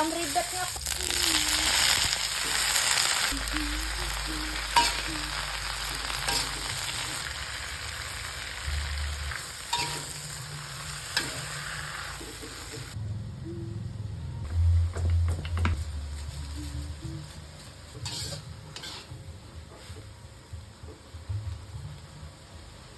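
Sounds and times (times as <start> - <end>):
food sizzling in a pan: 0.0 - 13.0, 16.7 - 20.0.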